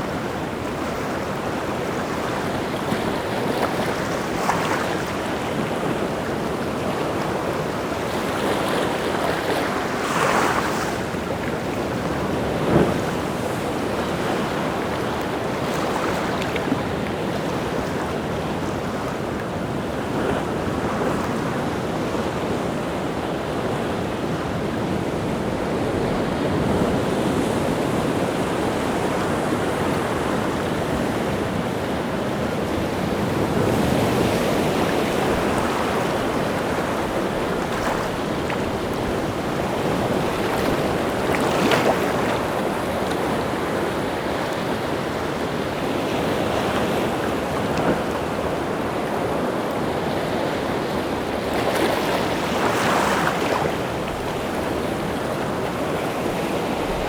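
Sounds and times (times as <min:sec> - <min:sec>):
wind: 0:00.0 - 0:57.0
sea waves breaking: 0:25.2 - 0:57.0.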